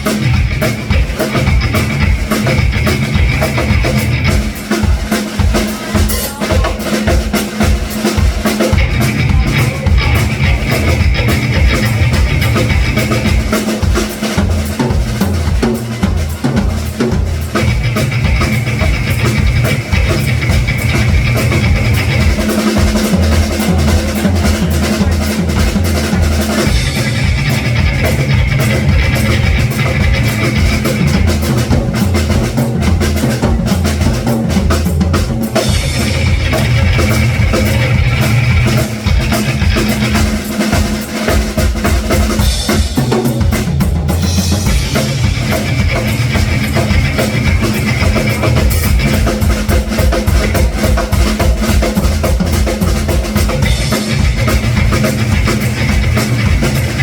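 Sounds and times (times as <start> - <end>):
bass drum and snare beat: 0.0 - 57.0
live blues band playing: 0.0 - 57.0.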